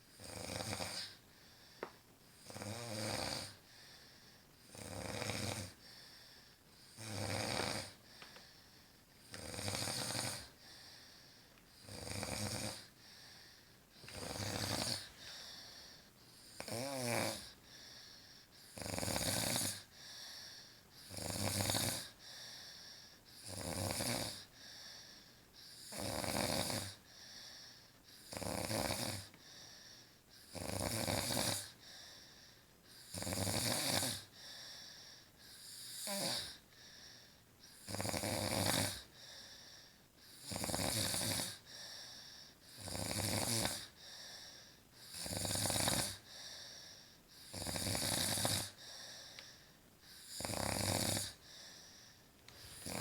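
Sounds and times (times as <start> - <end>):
woman snoring: 0.1 - 1.2, 2.4 - 3.6, 4.7 - 5.8, 6.9 - 8.0, 9.3 - 10.6, 11.8 - 12.9, 14.0 - 17.6, 18.7 - 19.9, 21.0 - 22.2, 23.4 - 24.5, 25.7 - 27.0, 28.2 - 29.3, 30.5 - 31.8, 33.0 - 34.3, 35.5 - 36.6, 37.7 - 39.1, 40.3 - 41.7, 42.7 - 49.5, 50.1 - 53.0.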